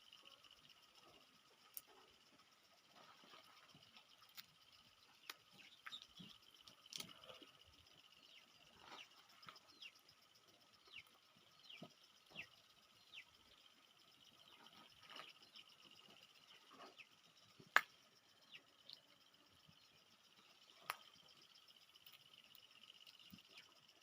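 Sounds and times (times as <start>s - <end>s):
bird chirping: 0.0s - 24.0s
high insect drone: 0.0s - 24.0s.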